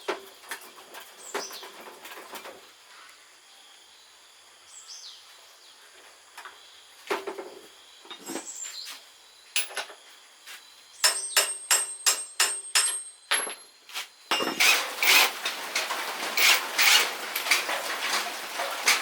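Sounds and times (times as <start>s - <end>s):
hammer striking metal: 11.0s - 13.6s.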